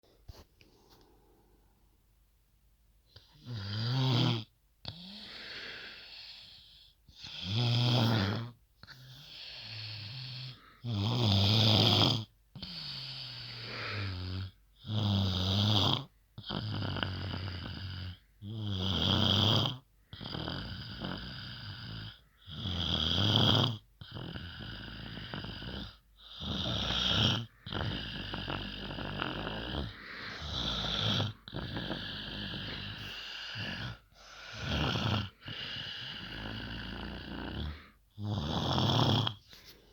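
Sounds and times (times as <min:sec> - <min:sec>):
deep snoring: 0:03.2 - 0:39.5
hissing breath: 0:29.6 - 0:36.3.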